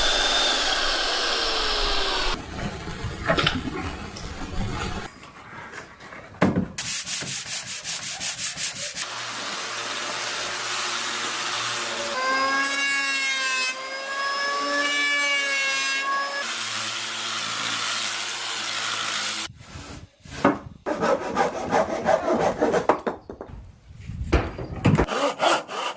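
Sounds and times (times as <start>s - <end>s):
hand saw cutting wood: 0.0s - 2.4s, 20.9s - 22.9s, 25.0s - 25.9s
power tool whining: 0.0s - 2.4s.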